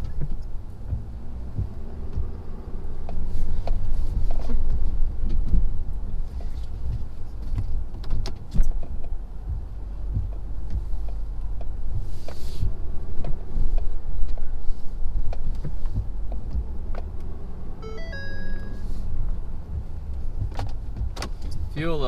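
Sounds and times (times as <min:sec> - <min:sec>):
diesel truck engine rumble: 0:00.0 - 0:22.0
electronic warning chime: 0:17.8 - 0:18.9.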